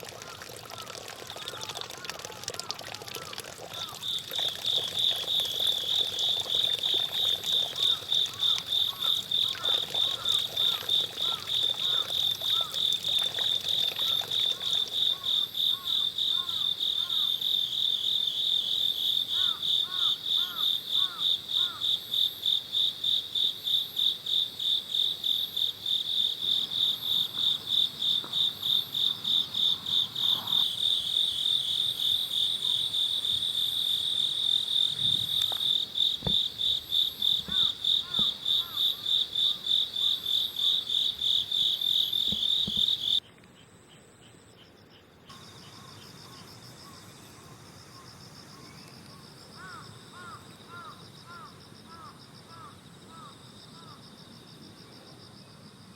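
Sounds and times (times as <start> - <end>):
insect pulsing trill: 27.0 - 43.2.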